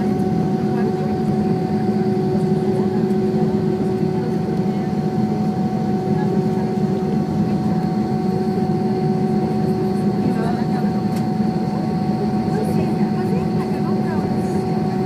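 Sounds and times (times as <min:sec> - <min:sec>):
jet engine drone: 0:00.0 - 0:15.0
steady humming tones: 0:00.0 - 0:15.0.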